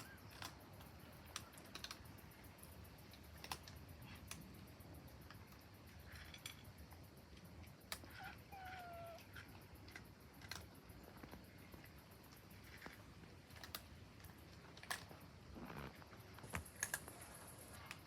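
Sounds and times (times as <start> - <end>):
cats crunching food: 0.0 - 18.0
cat meowing: 8.0 - 9.4.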